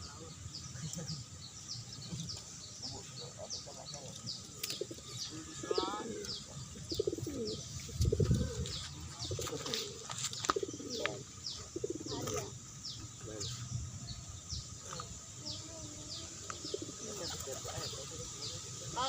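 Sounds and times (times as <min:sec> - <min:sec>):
pigeons cooing: 0:03.0 - 0:13.5, 0:14.8 - 0:18.9.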